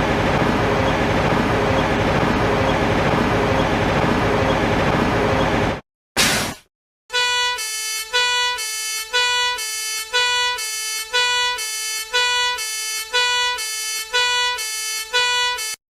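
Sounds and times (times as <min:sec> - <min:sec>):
two-tone emergency siren: 0:07.1 - 0:15.8.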